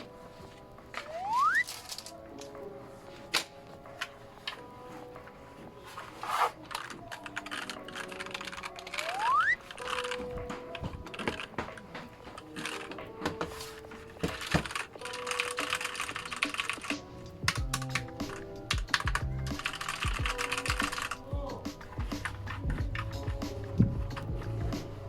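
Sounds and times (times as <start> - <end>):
typing on mechanical keyboard: 6.7 - 10.3, 14.3 - 21.3.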